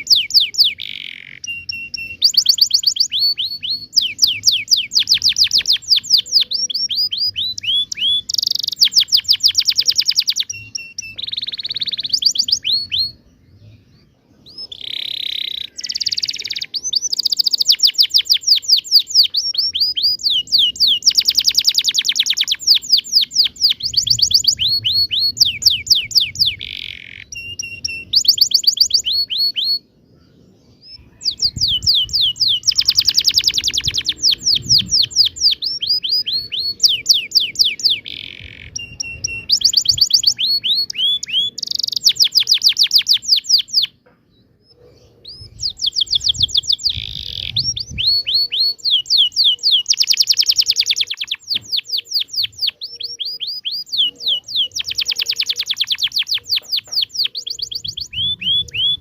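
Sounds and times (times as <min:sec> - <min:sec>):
canary singing trills: 0:00.0 - 0:59.0.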